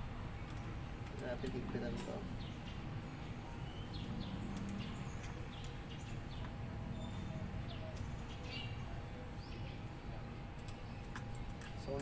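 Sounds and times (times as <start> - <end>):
bird chirps: 2.3 - 9.9.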